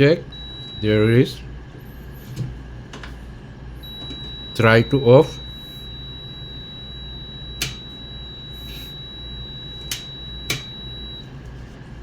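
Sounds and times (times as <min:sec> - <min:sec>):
multimeter continuity beep: 0:00.0 - 0:01.4, 0:03.8 - 0:11.4
sharp clicks: 0:07.6 - 0:07.9, 0:09.9 - 0:10.7.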